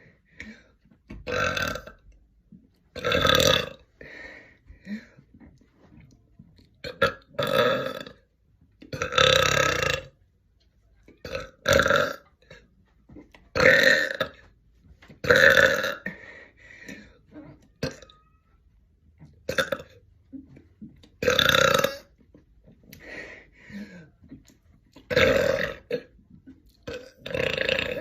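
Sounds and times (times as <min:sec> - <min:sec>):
woman burping: 0:00.4 - 0:02.1, 0:03.0 - 0:03.9, 0:06.8 - 0:08.2, 0:08.9 - 0:10.2, 0:11.2 - 0:12.7, 0:13.5 - 0:14.5, 0:15.2 - 0:18.3, 0:19.4 - 0:20.6, 0:21.2 - 0:22.2, 0:25.0 - 0:26.2, 0:26.8 - 0:28.0.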